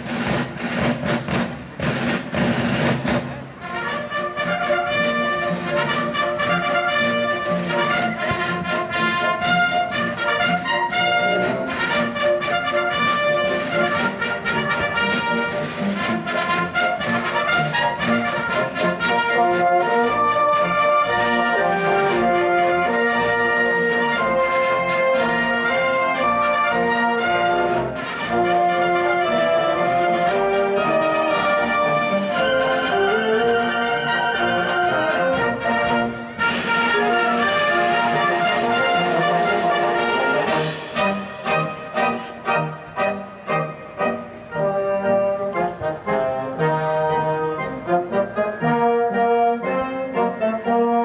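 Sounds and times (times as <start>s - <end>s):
sharp drum strokes: 0.0s - 3.6s
military brass band: 0.0s - 51.0s.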